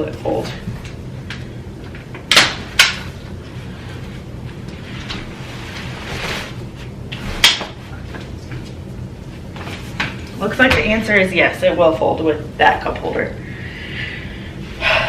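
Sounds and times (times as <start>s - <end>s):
soft sliding rustle: 3.5s - 7.4s.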